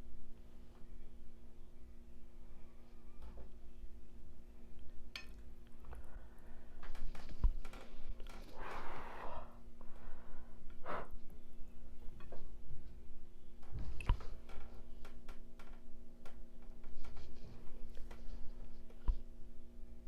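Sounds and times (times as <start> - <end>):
breathy exhales: 8.4 - 11.1.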